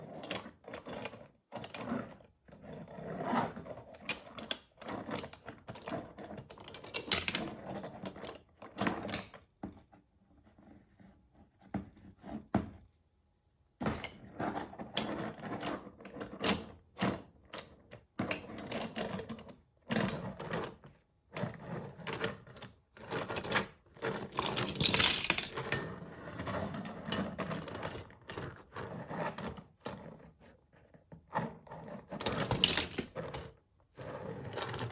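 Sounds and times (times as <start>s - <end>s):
toy cars clattering: 6.7s - 7.5s, 23.3s - 26.0s, 32.2s - 33.5s.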